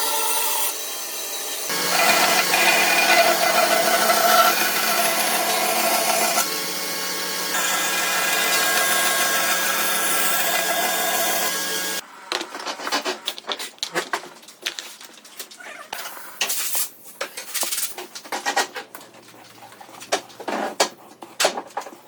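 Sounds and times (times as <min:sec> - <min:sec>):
power tool sanding wood: 0:01.2 - 0:12.0.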